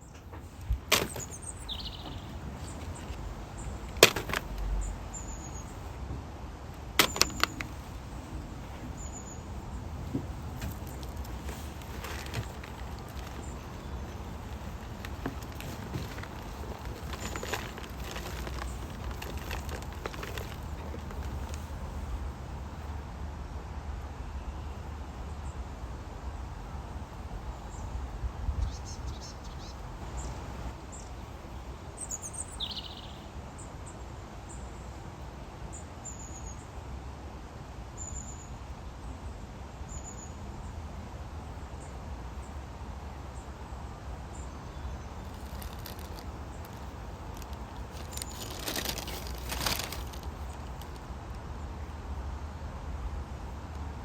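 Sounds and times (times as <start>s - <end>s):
rustling: 0.0s - 6.0s, 6.8s - 22.6s, 45.1s - 51.1s
small birds chirping: 0.0s - 6.0s, 6.8s - 22.4s, 27.5s - 33.3s, 44.3s - 51.1s
low outdoor rumble: 0.0s - 35.2s, 40.0s - 54.0s.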